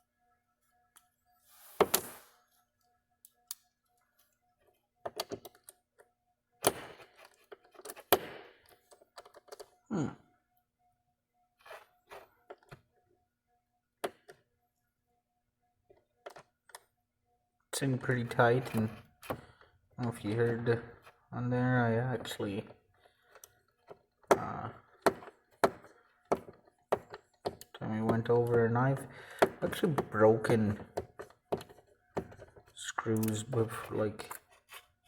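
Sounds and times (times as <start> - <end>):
screwdriver and plastic clicks: 26.3 - 34.9.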